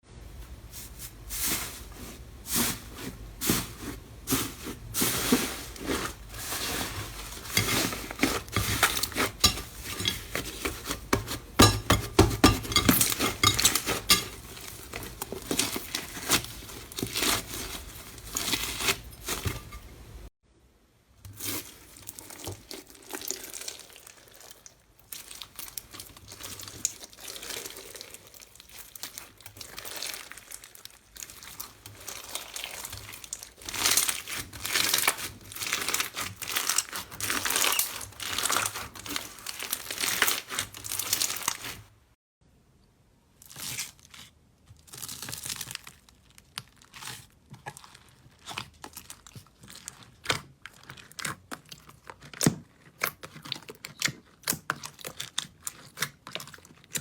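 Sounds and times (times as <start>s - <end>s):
slime crackling and popping: 21.4s - 41.7s.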